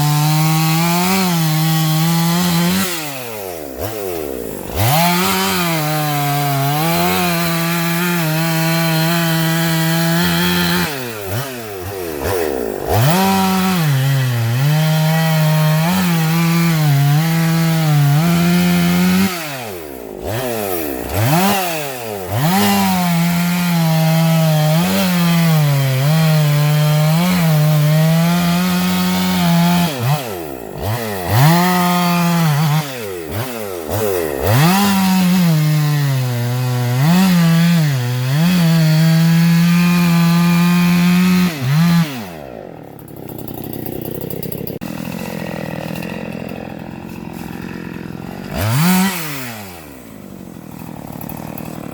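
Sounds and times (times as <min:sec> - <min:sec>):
chainsaw cutting wood: 0:00.0 - 0:51.9.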